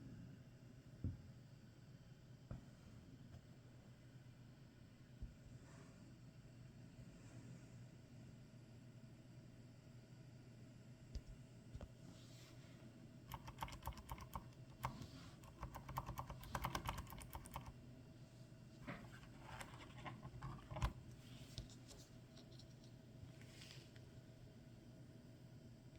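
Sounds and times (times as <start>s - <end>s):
faint keyboard typing: 13.3s - 17.8s, 18.8s - 23.0s.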